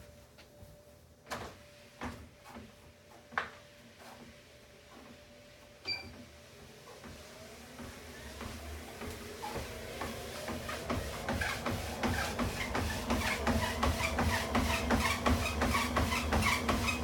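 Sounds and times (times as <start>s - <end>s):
treadmill clicks and knocks: 5.8s - 17.0s.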